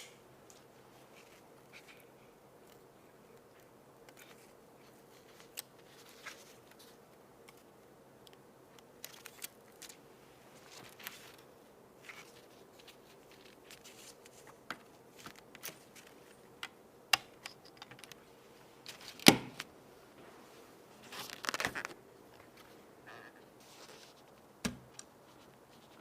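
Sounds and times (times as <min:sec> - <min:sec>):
packaging crinkling and tearing: 0:09.0 - 0:10.0, 0:21.0 - 0:22.0.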